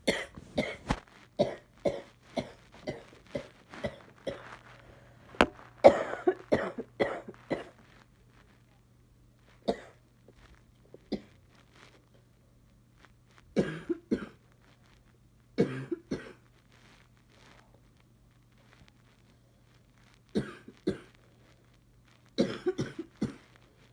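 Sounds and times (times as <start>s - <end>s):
girl coughing: 5.8s - 7.7s, 20.4s - 21.1s, 22.4s - 23.4s.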